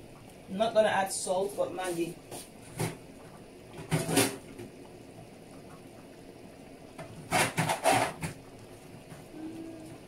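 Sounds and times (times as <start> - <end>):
rustling and clattering: 2.3 - 4.8, 7.0 - 9.3.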